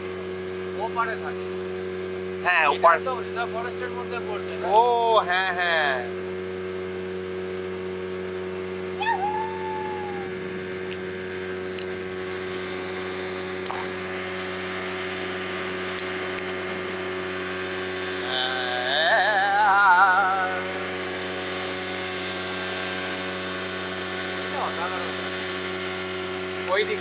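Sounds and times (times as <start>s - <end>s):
speedboat engine running: 0.0s - 27.0s
warbling tone: 9.0s - 10.4s.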